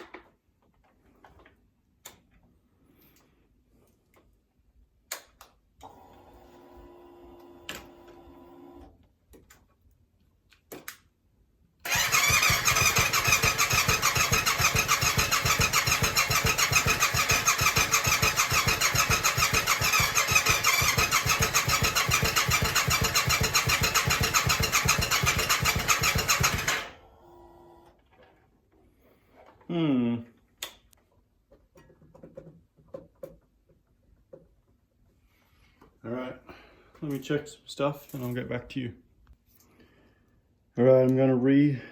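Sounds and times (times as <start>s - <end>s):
motorcycle starter cranking engine: 11.8s - 27.1s.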